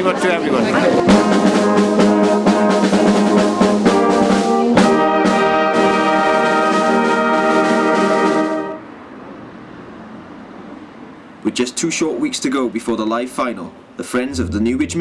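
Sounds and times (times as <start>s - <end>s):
brass instruments playing: 0.0s - 8.8s.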